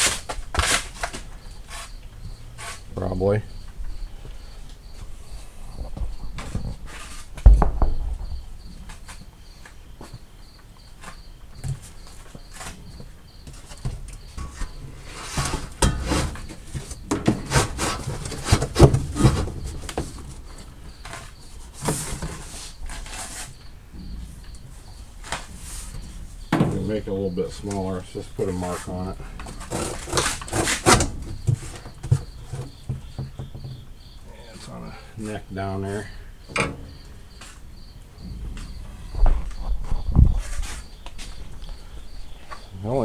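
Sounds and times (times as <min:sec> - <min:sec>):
cardboard scraping and rustling: 0:00.0 - 0:02.0, 0:05.1 - 0:09.2, 0:11.0 - 0:33.8
cricket chirping: 0:00.0 - 0:43.0
knocks and thump: 0:05.7 - 0:34.2, 0:35.9 - 0:42.7.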